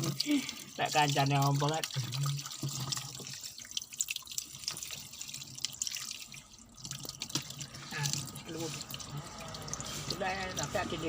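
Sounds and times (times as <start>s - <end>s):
water dripping and splashing: 0.0s - 11.0s.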